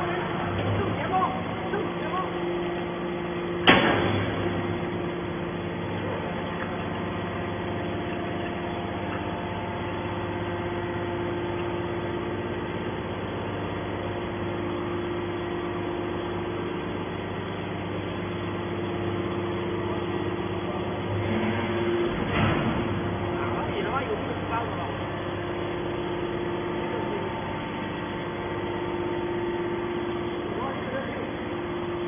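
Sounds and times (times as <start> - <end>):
hydraulic baler humming: 0.0 - 32.0.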